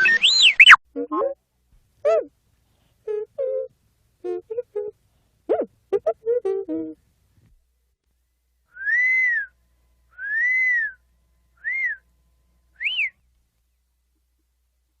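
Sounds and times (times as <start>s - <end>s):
whistled tones: 0.0s - 0.8s, 8.7s - 9.6s, 10.2s - 11.0s, 11.6s - 12.0s, 12.8s - 13.2s.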